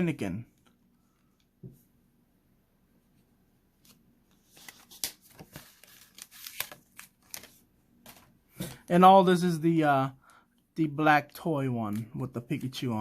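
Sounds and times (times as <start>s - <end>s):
card pack crinkling: 4.4s - 8.2s.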